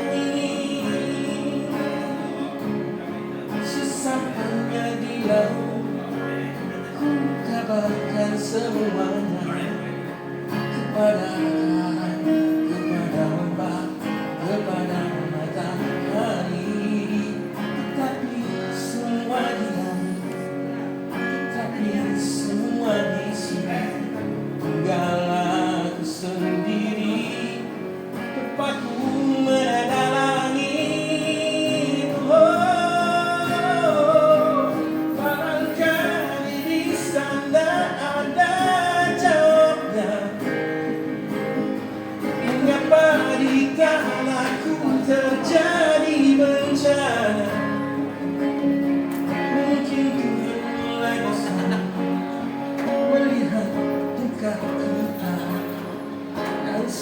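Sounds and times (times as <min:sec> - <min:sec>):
man singing ballad: 0:00.0 - 0:57.0
strummed acoustic guitar: 0:00.0 - 0:57.0.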